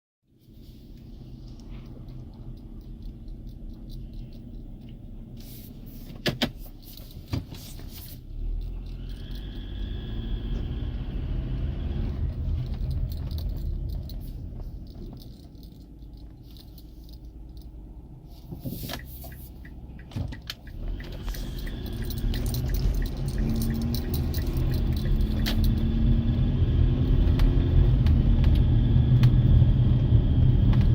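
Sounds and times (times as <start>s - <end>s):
car engine accelerating: 8.1s - 18.2s, 19.0s - 30.9s.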